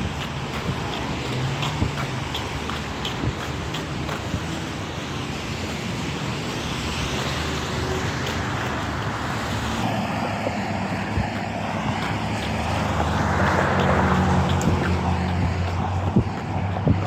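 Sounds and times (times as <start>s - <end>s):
jogger's footfalls: 0.0s - 17.0s
low traffic rumble: 0.0s - 17.0s
tyre hiss on wet road: 0.8s - 10.0s.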